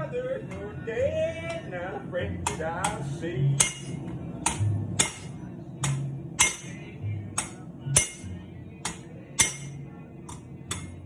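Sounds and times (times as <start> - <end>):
background music: 0.0 - 11.0
hammer striking steel on anvil: 3.6 - 11.0.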